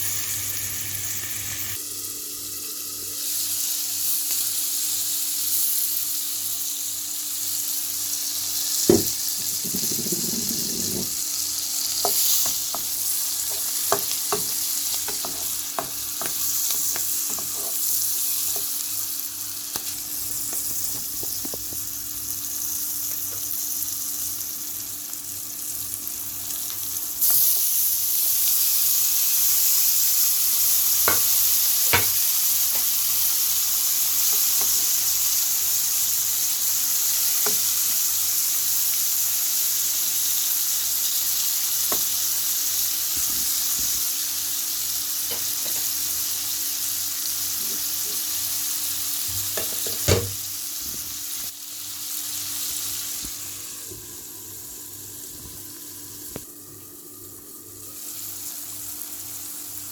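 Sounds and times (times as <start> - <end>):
peppers sizzling in a pan: 0.0 - 59.9
utensil tapping pan: 12.0 - 17.8, 31.1 - 31.3, 31.9 - 32.9, 49.4 - 50.4.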